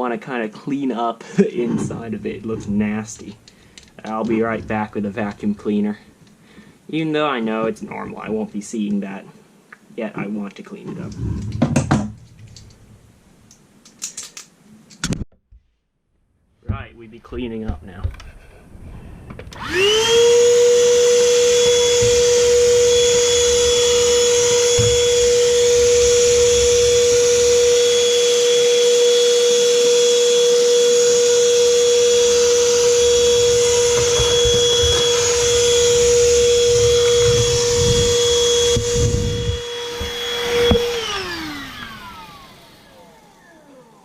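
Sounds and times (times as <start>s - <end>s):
vacuum cleaner whining: 1.6s - 5.9s, 19.2s - 44.0s.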